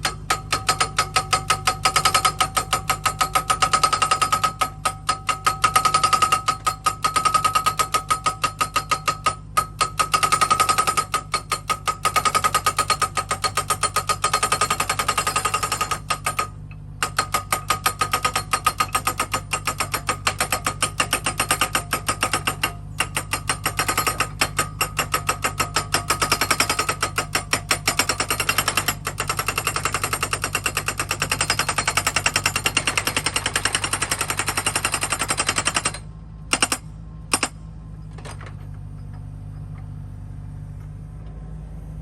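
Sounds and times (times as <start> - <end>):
rapid mechanical hammering: 0.0 - 37.6
engine drone: 35.8 - 42.0.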